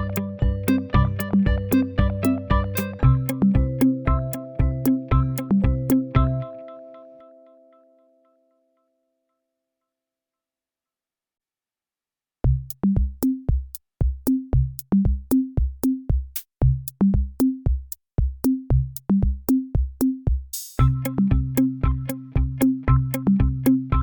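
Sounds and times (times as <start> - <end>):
drum machine beat: 0.0 - 6.4, 12.4 - 24.0
bass line: 0.0 - 6.6, 12.4 - 13.4, 14.5 - 15.2, 16.6 - 17.2, 18.7 - 19.2, 20.8 - 24.0
synth layer: 0.0 - 7.9.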